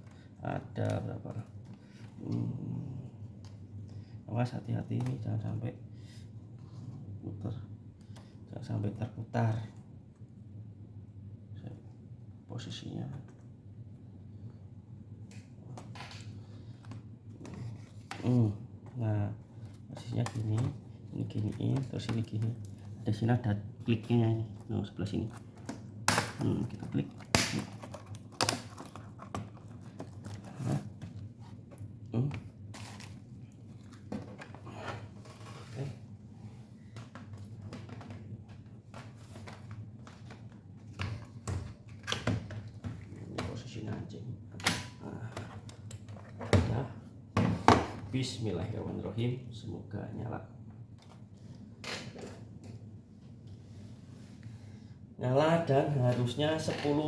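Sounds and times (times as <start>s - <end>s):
murmured voice: 2.2s - 3.2s.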